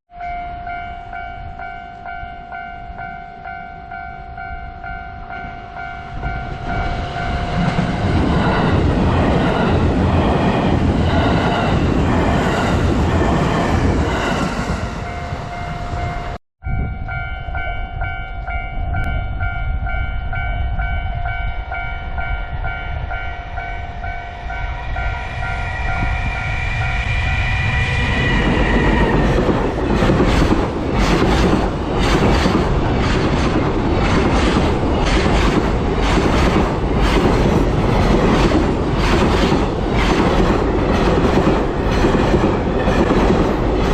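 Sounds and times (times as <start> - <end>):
level-crossing warning bell: 0.1 - 8.9, 14.9 - 29.2
train wheels clattering over rails: 28.4 - 43.9.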